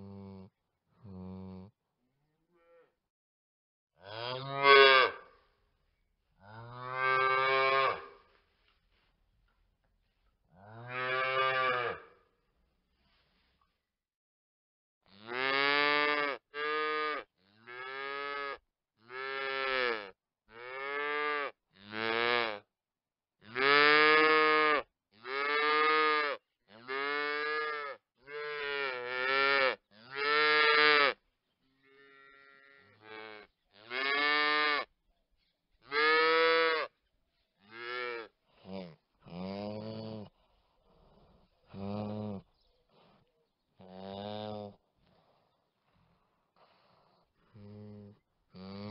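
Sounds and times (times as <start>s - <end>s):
calves mooing: 10.7s - 12.1s.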